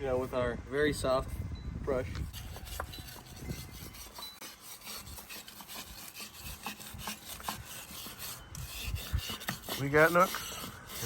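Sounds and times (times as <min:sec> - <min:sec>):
brush scrubbing metal wheel: 0:02.3 - 0:11.0.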